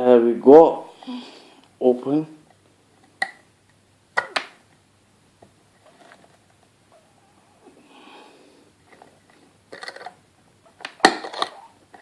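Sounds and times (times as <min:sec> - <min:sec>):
soft breath: 0:00.9 - 0:01.7, 0:07.0 - 0:09.6.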